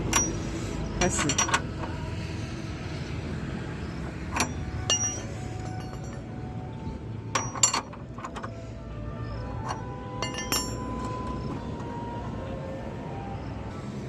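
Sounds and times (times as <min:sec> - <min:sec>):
metal tools clinking: 0:00.0 - 0:02.0, 0:04.2 - 0:06.4, 0:07.2 - 0:08.6, 0:09.3 - 0:11.4
metal knock with ring: 0:04.3 - 0:06.2, 0:07.3 - 0:07.9, 0:09.6 - 0:10.9.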